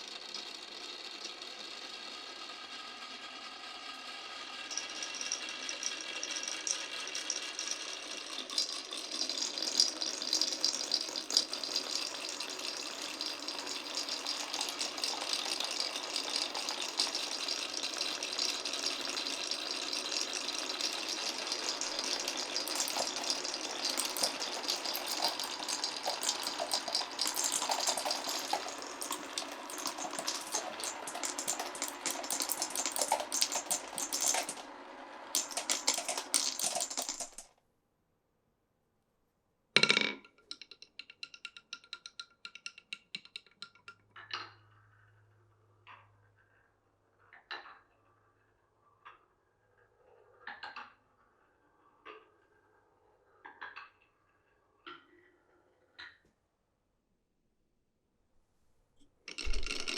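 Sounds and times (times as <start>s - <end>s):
marbles rattling down wooden run: 0.0s - 37.5s, 59.3s - 59.9s.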